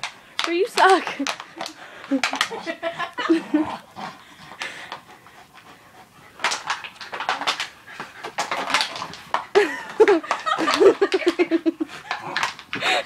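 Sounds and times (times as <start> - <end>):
plastic bottle crinkling: 0.0 - 3.4, 6.4 - 13.0
dog panting: 0.7 - 13.0.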